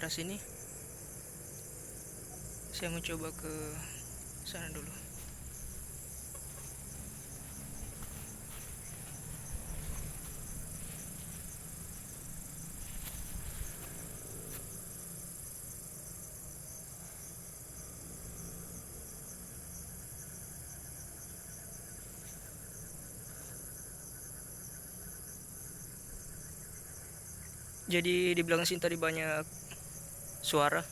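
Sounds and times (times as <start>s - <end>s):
crickets chirring: 0.0s - 30.9s
soft rustles in undergrowth: 4.1s - 15.2s.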